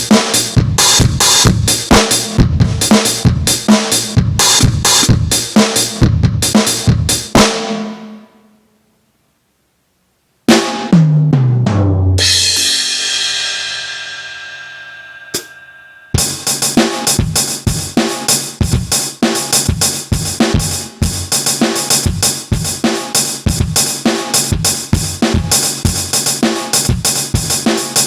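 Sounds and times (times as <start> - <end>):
drum beat on kick snare hi-hat: 0.0 - 8.0, 10.5 - 11.5, 16.2 - 28.0
tom fill: 0.0 - 8.6
crash cymbal ringing: 12.2 - 17.0.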